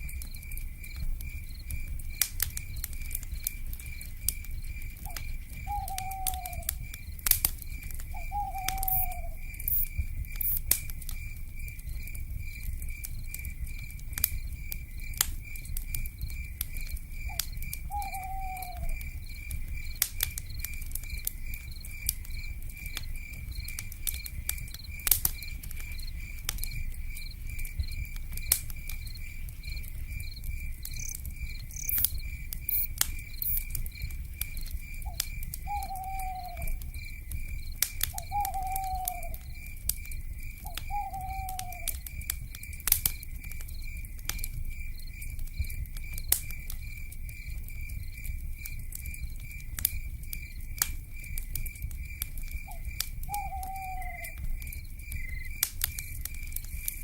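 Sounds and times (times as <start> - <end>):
wood fire crackling and popping: 0.0 - 57.0
owl calls: 5.1 - 6.7, 8.2 - 9.4, 17.9 - 19.0, 35.1 - 36.8, 38.2 - 39.4, 40.7 - 42.0, 52.7 - 54.4.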